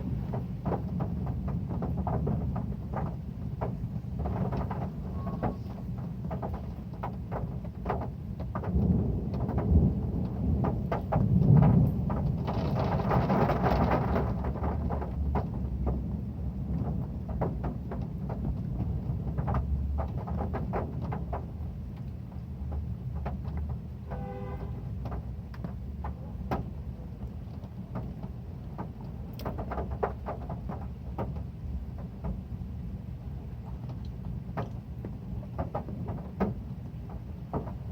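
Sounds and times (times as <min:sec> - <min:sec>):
heavy rain on a metal roof: 0:00.0 - 0:37.9
thunder rolling: 0:08.6 - 0:17.3.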